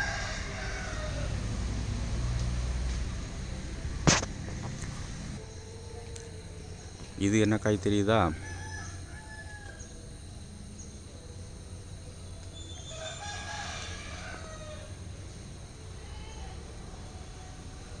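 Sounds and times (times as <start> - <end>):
rooster crowing: 0.0 - 1.5, 8.2 - 10.3, 12.6 - 15.1.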